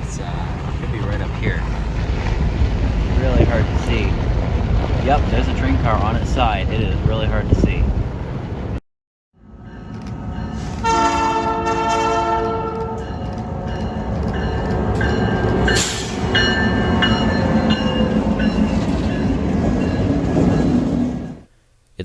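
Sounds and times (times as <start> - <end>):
train rolling by: 0.0 - 8.8, 9.4 - 21.5
locomotive horn blast: 10.6 - 13.8.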